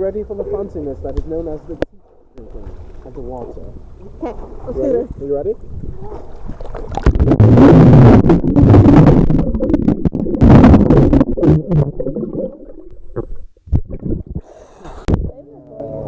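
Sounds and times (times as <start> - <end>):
muffled water churning: 0.0 - 16.0
sharp water splashes: 2.4 - 4.8, 6.0 - 13.3.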